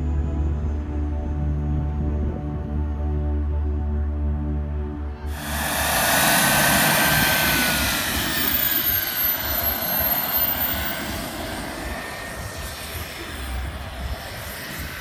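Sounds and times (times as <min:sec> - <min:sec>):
aircraft flying past: 0:04.3 - 0:15.0.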